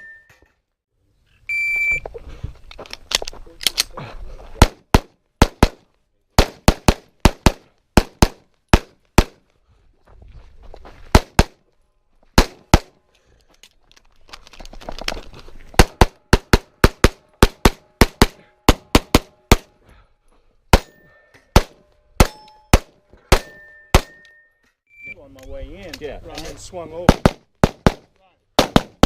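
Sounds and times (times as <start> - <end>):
pistol shots fired rapidly: 15.8 - 19.7, 27.1 - 29.0.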